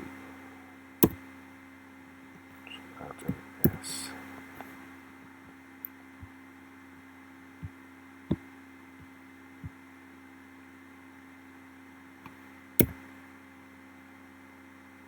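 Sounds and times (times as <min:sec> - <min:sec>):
steady electrical hum: 0:00.0 - 0:15.0
keyboard and mouse clicks: 0:12.2 - 0:13.0.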